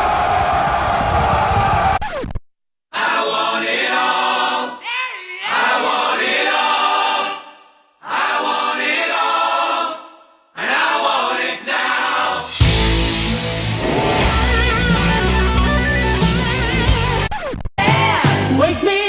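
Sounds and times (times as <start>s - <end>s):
choir singing held chords: 2.9s - 14.4s.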